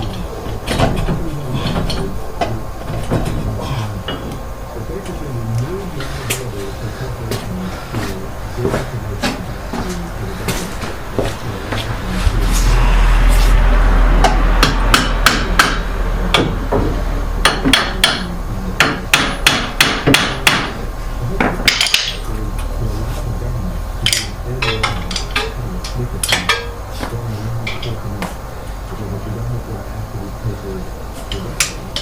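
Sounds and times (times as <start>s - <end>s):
hammer striking metal: 12.1s - 20.8s.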